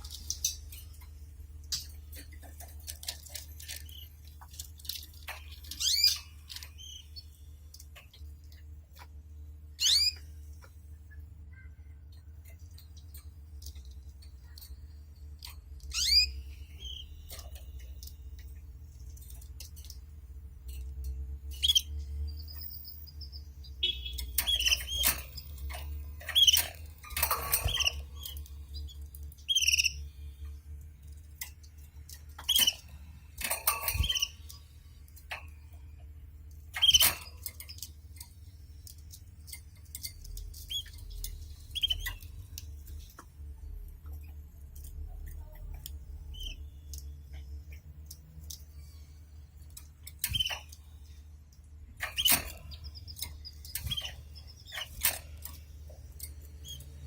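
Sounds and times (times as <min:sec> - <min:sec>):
canaries chirping and twittering: 0:00.0 - 0:11.6, 0:12.4 - 0:35.8, 0:36.7 - 0:51.2, 0:51.9 - 0:57.0.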